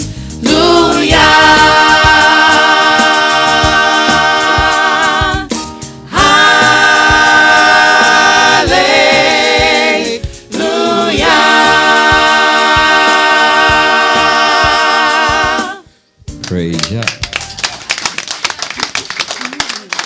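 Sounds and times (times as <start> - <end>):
gospel group singing in harmony: 0.0 - 16.0.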